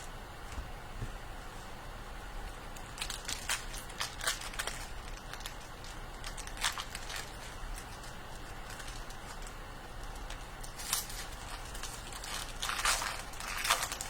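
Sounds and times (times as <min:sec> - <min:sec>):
card pack wrappers crinkling: 0:02.8 - 0:14.0.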